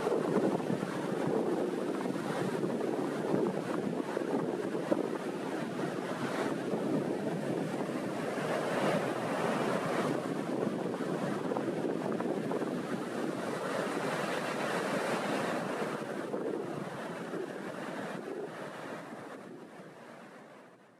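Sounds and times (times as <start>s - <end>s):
wind blowing: 0.0s - 19.8s
waves breaking on shore: 0.0s - 20.8s.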